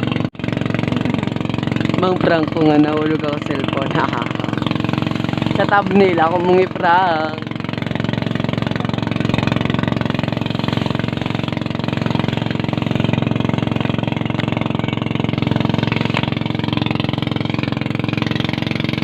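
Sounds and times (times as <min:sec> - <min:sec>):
boat engine running: 0:00.0 - 0:19.0.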